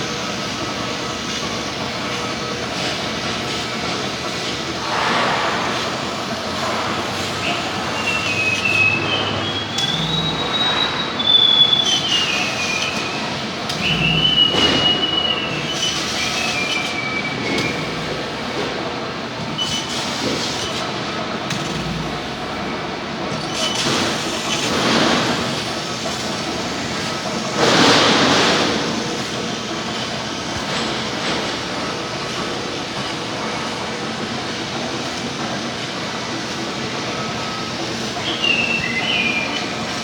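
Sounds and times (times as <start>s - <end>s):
laser cutter mechanical noise: 0.0s - 40.0s
hissing: 7.4s - 18.6s.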